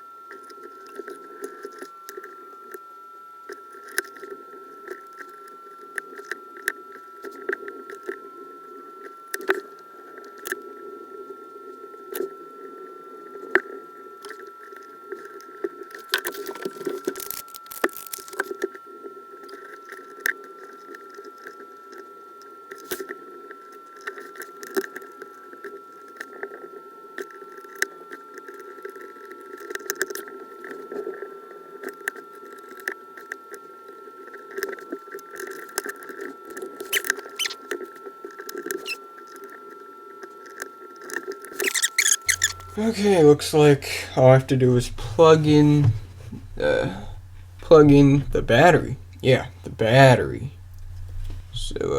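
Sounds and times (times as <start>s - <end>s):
steady electrical hum: 0.0s - 51.9s
thin high whine: 41.5s - 51.9s.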